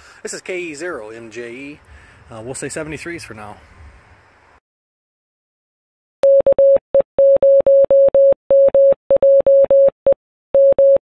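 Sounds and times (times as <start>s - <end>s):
morse code beeps: 6.2s - 11.0s.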